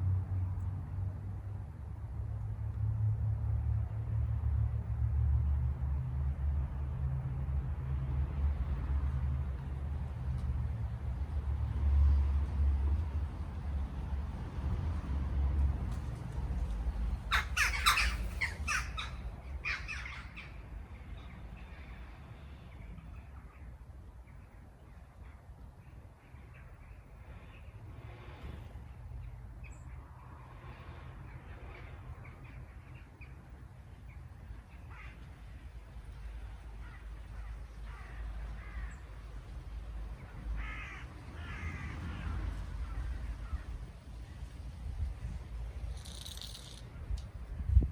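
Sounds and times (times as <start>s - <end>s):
bird harsh calls: 17.2s - 20.6s, 46.0s - 46.8s.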